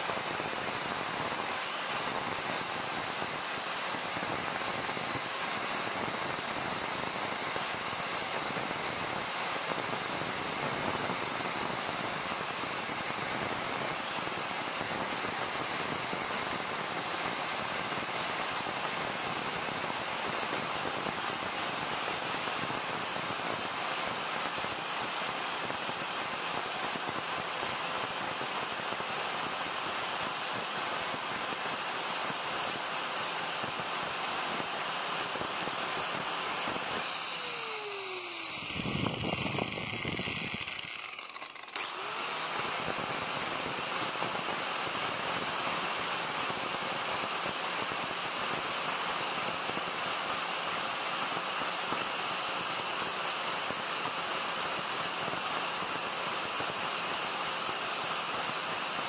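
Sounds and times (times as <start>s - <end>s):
angle grinder sanding metal: 36.2s - 44.4s.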